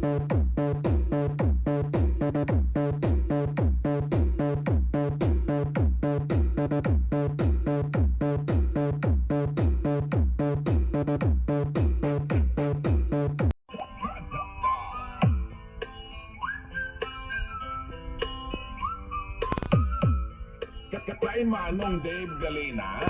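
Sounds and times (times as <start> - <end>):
electronic dance music: 0.0 - 15.5.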